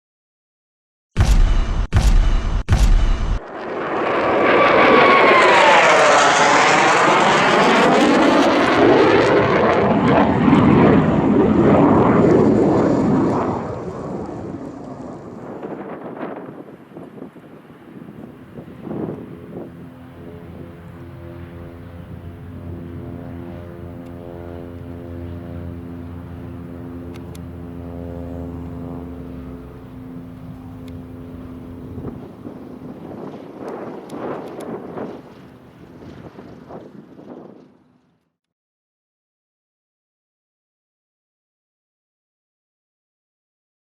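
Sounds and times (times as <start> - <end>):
propeller plane passing: 3.4 - 38.2
wind noise: 10.4 - 19.9, 31.5 - 37.8.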